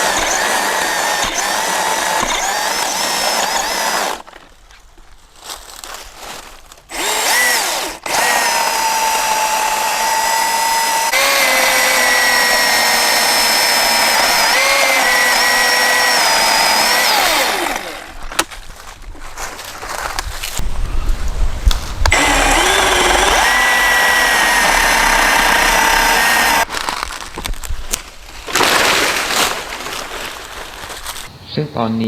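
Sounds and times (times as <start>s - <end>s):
electric chainsaw cutting wood: 0.0s - 4.3s, 6.9s - 18.4s, 22.0s - 26.7s.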